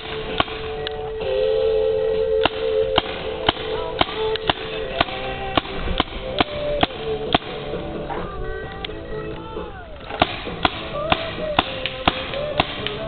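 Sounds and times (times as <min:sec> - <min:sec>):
music playing: 0:00.0 - 0:13.0
paintball gun firing pops: 0:02.4 - 0:09.4, 0:10.0 - 0:13.0.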